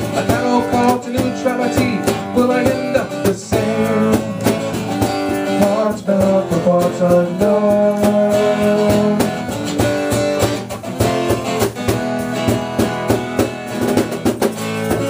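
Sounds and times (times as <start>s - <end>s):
person singing: 0.0s - 9.5s
live band music: 0.0s - 15.0s
strummed acoustic guitar: 0.0s - 15.0s.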